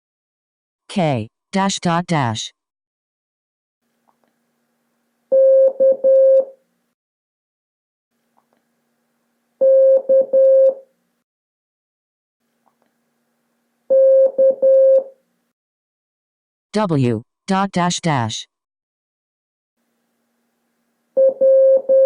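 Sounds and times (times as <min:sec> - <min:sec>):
morse code beep tone: 0:05.3 - 0:06.5, 0:09.6 - 0:10.8, 0:13.9 - 0:15.1, 0:21.2 - 0:22.0.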